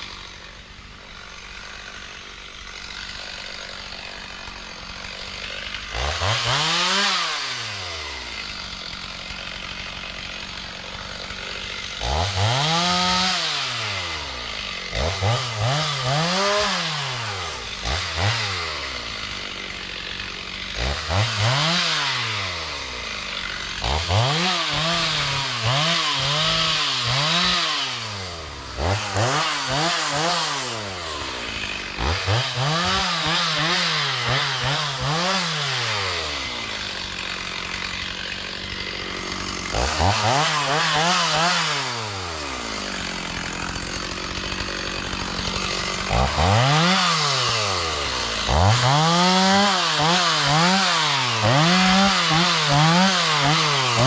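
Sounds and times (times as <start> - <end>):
chainsaw engine revving and idling: 0.0 - 54.0.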